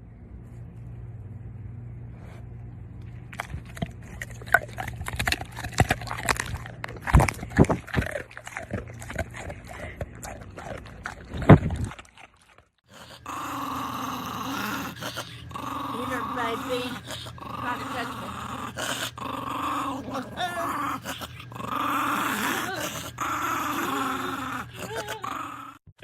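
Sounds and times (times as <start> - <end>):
dog growling and whimpering: 12.9 - 25.8.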